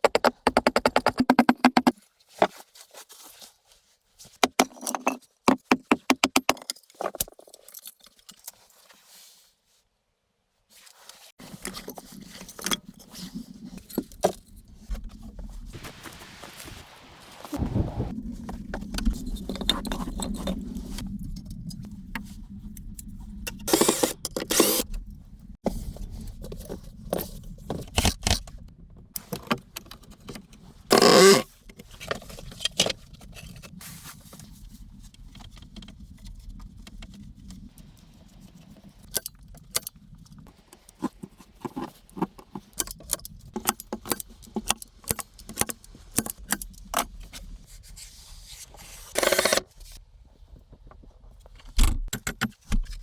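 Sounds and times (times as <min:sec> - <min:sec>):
objects clicking and scraping: 0:48.8 - 0:50.0.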